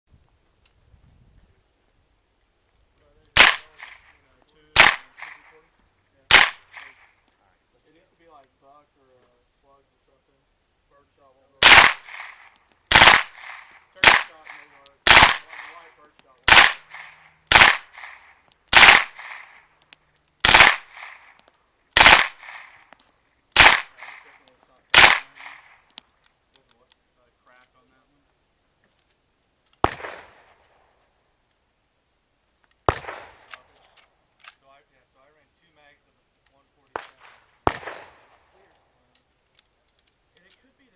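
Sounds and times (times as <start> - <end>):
suppressed gunshots with echo: 3.4 - 7.1, 11.6 - 23.0, 23.6 - 26.0, 29.8 - 30.9, 32.8 - 33.8, 36.9 - 38.7.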